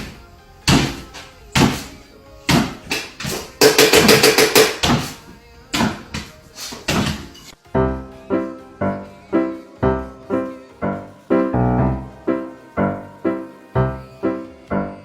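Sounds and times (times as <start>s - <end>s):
sharp knocks: 2.5s - 5.2s.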